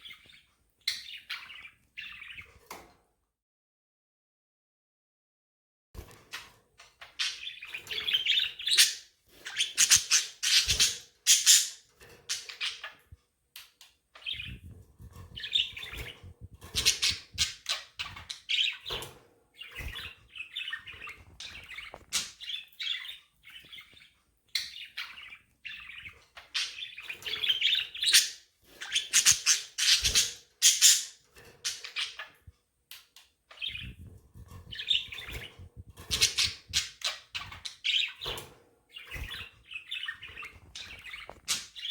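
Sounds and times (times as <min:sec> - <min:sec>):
budgerigars chirping: 0:07.2 - 0:12.9, 0:15.4 - 0:19.0, 0:19.6 - 0:32.3, 0:34.7 - 0:38.3.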